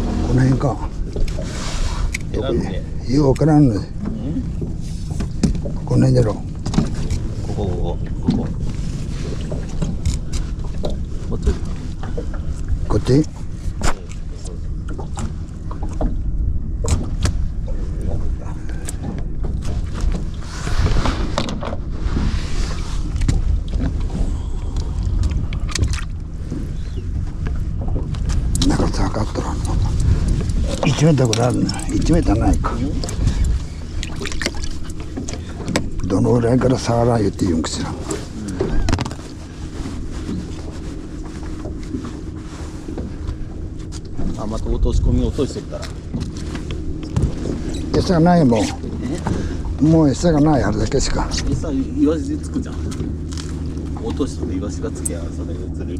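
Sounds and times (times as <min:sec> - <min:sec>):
wind on microphone: 0:00.0 - 0:36.2
boat engine humming: 0:00.0 - 0:55.9.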